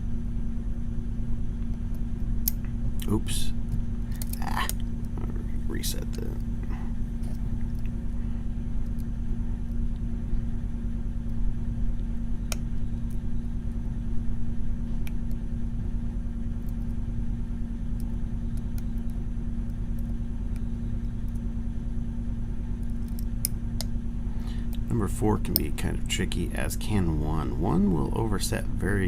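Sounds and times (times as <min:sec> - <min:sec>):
low hum and rumble: 0:00.0 - 0:29.0.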